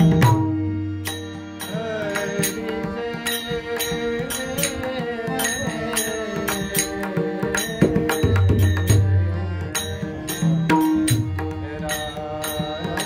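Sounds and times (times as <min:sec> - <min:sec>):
devotional singing: 0:01.6 - 0:08.5, 0:11.3 - 0:13.0.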